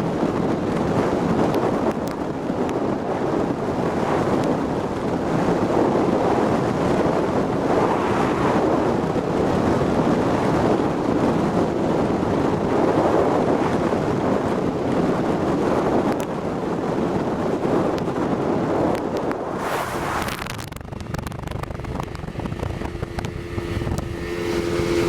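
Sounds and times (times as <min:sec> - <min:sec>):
wind on microphone: 0:00.0 - 0:25.0
boat outboard motor running: 0:20.8 - 0:25.0.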